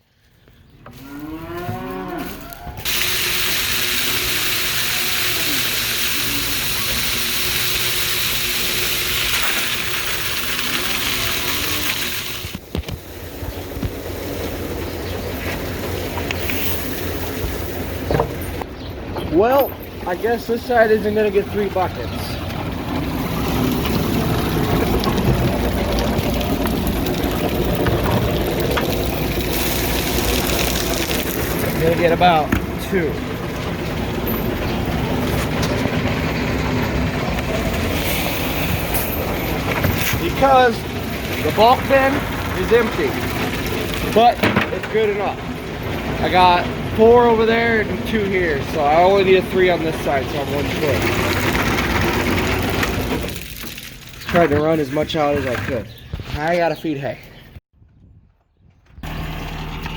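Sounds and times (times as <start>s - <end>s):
grain pouring into bucket: 2.8s - 12.6s, 23.0s - 33.2s, 37.6s - 44.4s, 48.5s - 54.8s
engine running steadily: 2.8s - 53.4s.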